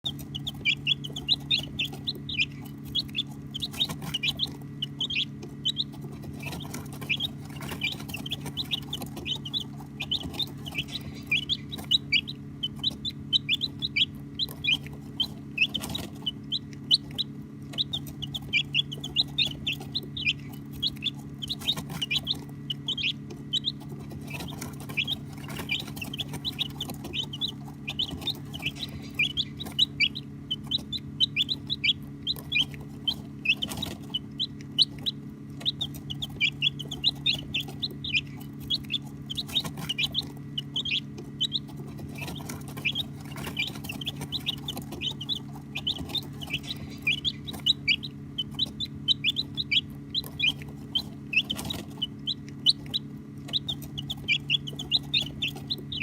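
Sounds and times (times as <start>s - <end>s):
chicks peeping: 0.0s - 56.0s
low hum: 0.0s - 56.0s.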